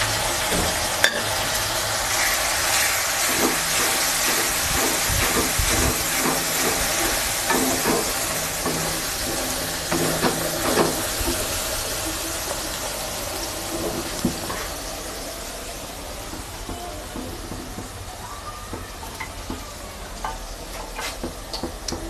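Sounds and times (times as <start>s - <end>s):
paste sizzling in hot oil: 0.0s - 18.3s
spatula scraping a pan: 2.2s - 11.6s.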